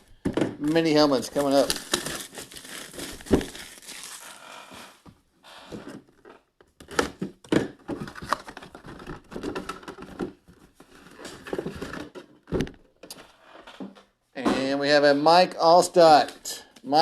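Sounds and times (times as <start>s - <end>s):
packaging crinkling and tearing: 1.2s - 5.0s.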